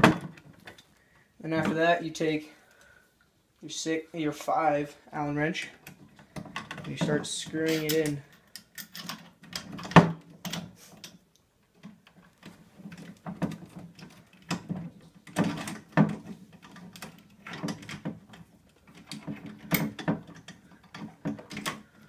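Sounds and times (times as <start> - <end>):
metal clicks and knocks: 5.8 - 22.0.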